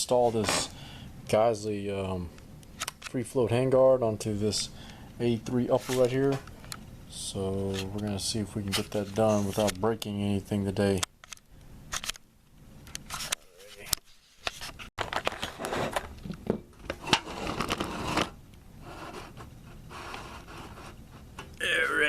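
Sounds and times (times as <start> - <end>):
rifle parts clicking and scraping: 11.2 - 12.2.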